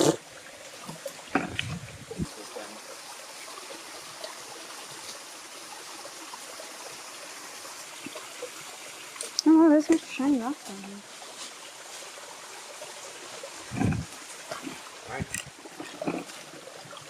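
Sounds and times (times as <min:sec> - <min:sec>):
waterfall trickling into a pool: 0:00.0 - 0:17.0
rustling and knocks: 0:01.3 - 0:02.0, 0:15.2 - 0:16.4.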